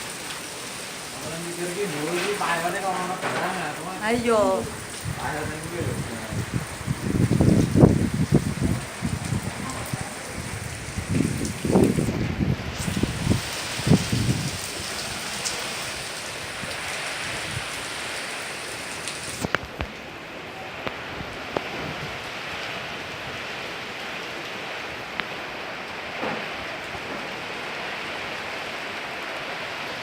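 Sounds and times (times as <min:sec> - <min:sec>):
rain falling in wind: 0:00.0 - 0:30.0.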